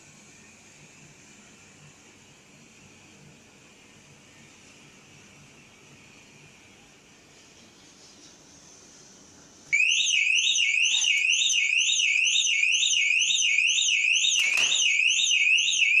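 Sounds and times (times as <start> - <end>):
security alarm siren: 9.7 - 16.0.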